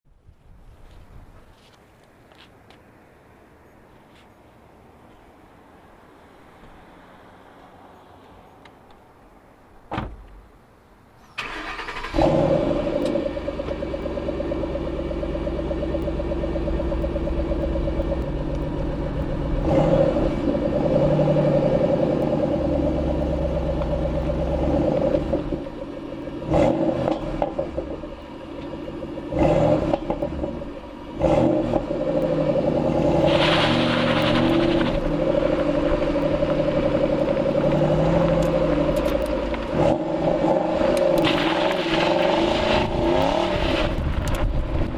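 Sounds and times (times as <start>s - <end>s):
car engine starting and revving: 11.2s - 44.9s
car engine idling: 11.4s - 44.9s.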